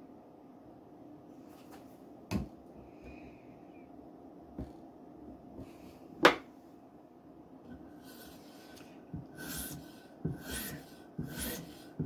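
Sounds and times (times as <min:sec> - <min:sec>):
knife scraping on strop: 0:08.1 - 0:12.0.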